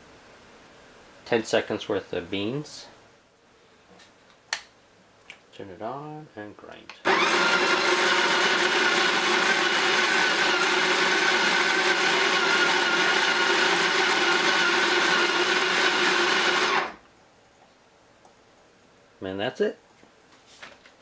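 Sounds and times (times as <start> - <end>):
coffee grinder motor whine: 7.1 - 17.0.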